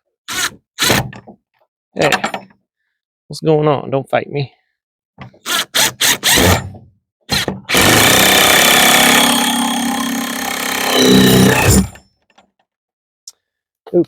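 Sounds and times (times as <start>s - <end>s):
impact driver driving screws: 5.4s - 6.7s, 7.3s - 12.0s.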